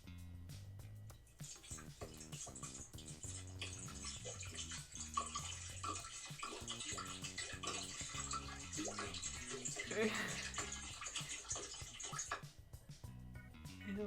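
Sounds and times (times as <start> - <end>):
water pouring from a bottle: 1.3 - 12.5.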